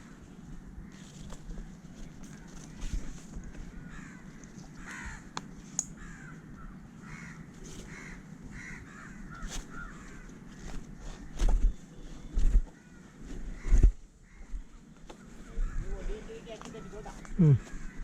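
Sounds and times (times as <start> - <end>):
low background hum: 0.0 - 18.0
crows cawing: 0.8 - 1.2, 2.2 - 10.7, 12.7 - 18.0.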